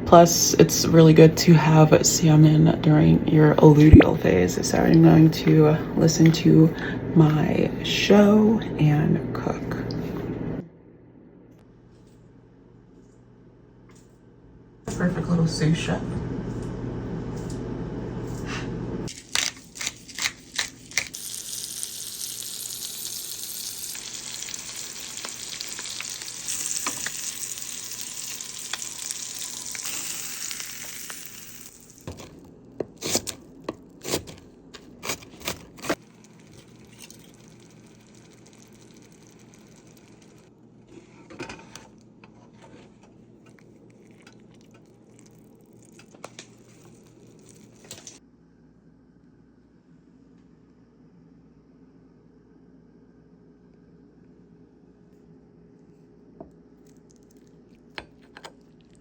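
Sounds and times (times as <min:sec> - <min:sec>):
food sizzling in a frying pan: 0:21.1 - 0:32.3, 0:35.9 - 0:40.5, 0:44.9 - 0:48.2.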